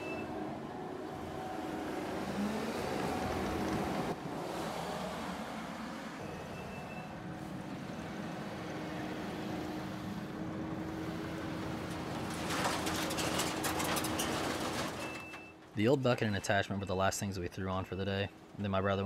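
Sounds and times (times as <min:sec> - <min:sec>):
scrap metal clattering: 0:11.7 - 0:15.8.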